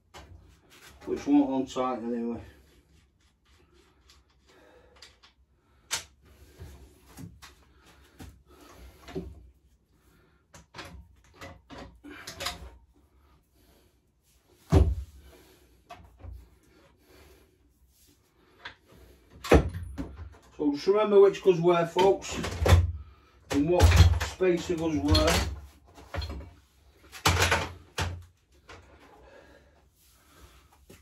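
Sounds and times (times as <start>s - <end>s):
metal parts clattering: 23.5s - 26.4s.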